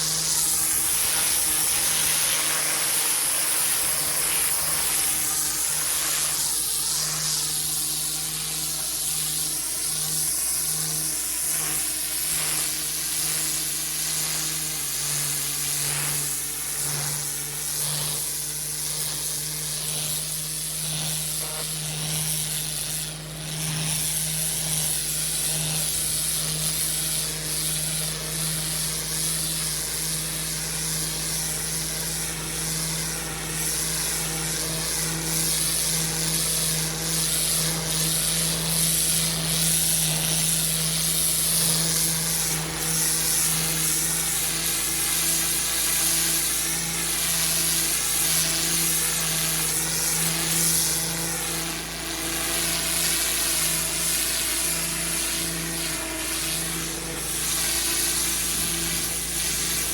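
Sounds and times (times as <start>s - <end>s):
pressure washer engine running: 0.0s - 59.9s
water jet hissing on paving: 0.0s - 59.9s.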